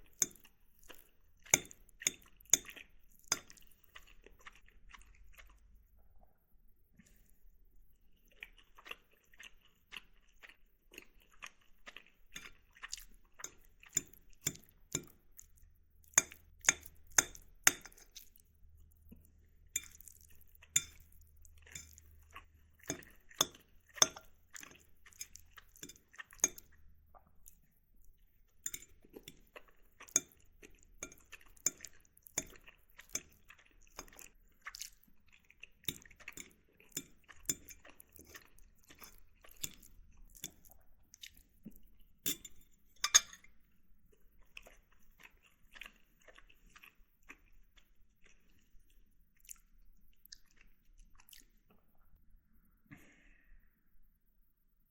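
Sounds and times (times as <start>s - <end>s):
soft chewing: 0.0s - 54.9s
fork clinking on ceramic plate: 1.5s - 3.6s, 19.8s - 20.0s, 20.7s - 22.0s, 28.6s - 29.4s, 42.3s - 43.5s.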